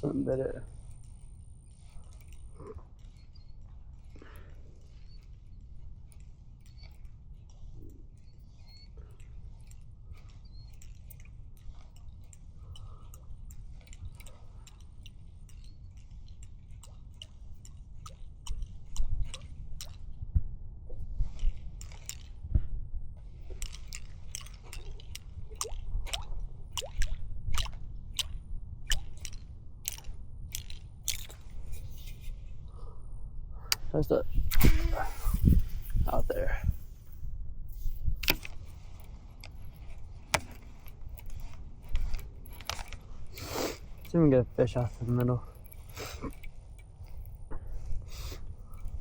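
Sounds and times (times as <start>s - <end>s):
crunching and clicking: 0.7s - 20.2s, 21.2s - 22.5s, 23.2s - 32.4s, 33.7s - 49.0s
wind rumbling on microphone: 18.5s - 49.0s.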